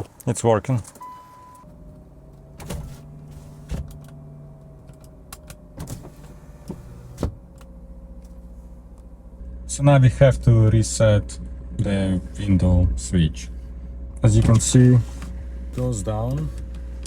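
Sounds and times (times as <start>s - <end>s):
power window motor hum: 1.1s - 9.3s, 14.0s - 17.0s.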